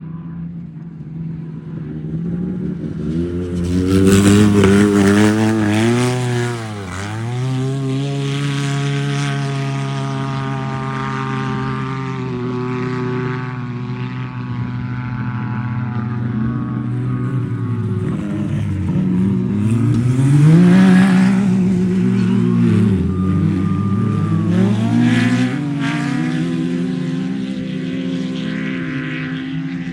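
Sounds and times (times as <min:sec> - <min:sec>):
engine revving hard: 0:03.1 - 0:11.0, 0:16.9 - 0:29.2.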